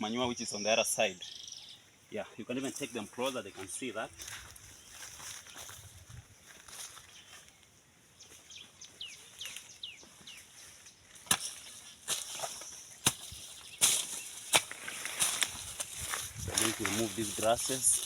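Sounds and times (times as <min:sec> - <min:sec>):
rustling scrapes of grass: 0:09.0 - 0:18.0
weeding tool striking soil: 0:11.1 - 0:18.0.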